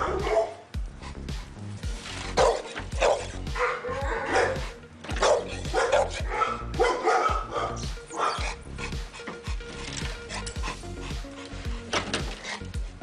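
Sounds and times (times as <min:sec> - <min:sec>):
dog barking: 0:00.0 - 0:00.6, 0:02.4 - 0:08.6
background music: 0:00.0 - 0:13.0.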